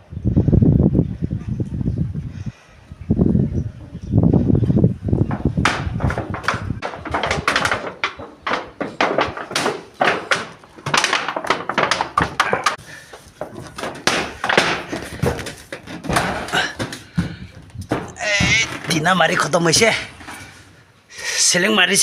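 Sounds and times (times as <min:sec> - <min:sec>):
knocks on plywood boards: 0:05.2 - 0:19.0.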